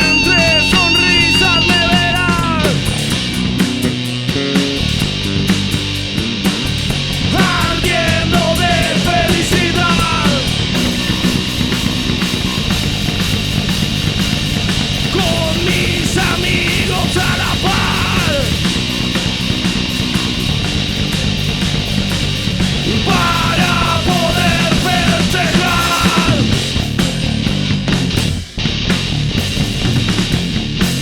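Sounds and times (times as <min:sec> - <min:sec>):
sliding melodic guitar line: 0:00.0 - 0:07.0
rock band playing: 0:00.0 - 0:31.0.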